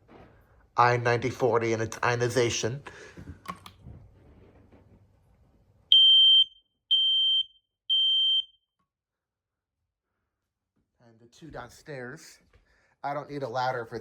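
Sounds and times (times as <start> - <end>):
smoke alarm beeps: 5.9 - 8.7.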